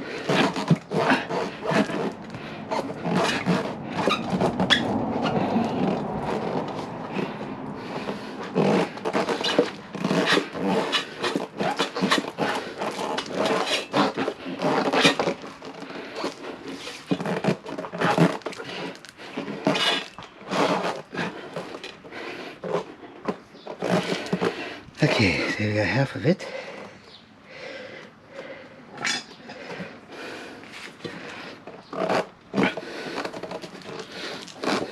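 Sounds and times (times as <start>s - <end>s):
rubber and tools scraping rim: 0.0s - 27.2s, 28.4s - 34.9s.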